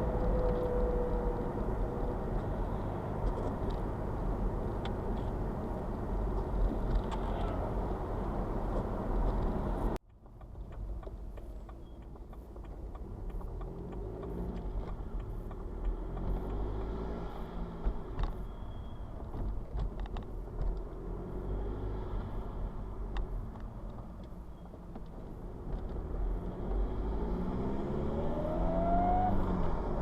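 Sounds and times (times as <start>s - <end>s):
car engine driving: 0.0s - 30.0s
road noise: 0.0s - 30.0s.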